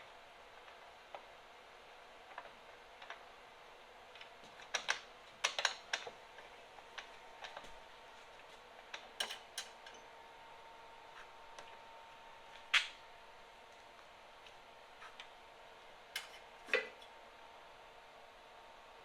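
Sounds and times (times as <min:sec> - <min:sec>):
metal tools clicking and clinking: 0:09.2 - 0:10.0, 0:16.2 - 0:17.0.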